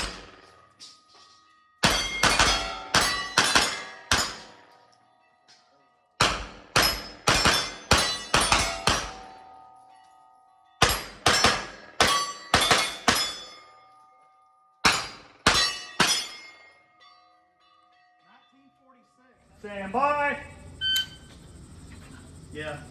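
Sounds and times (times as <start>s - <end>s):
steel targets ringing: 0.0s - 21.3s.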